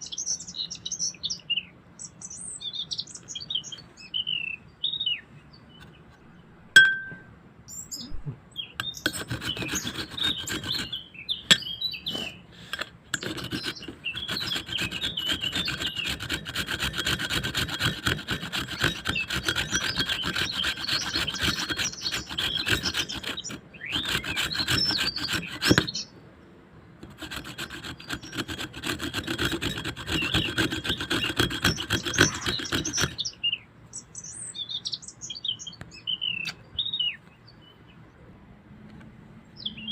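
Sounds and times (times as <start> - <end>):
birds chirping faintly: 0.0 - 39.9
rasping scraping by hand: 8.8 - 26.1, 27.0 - 33.4.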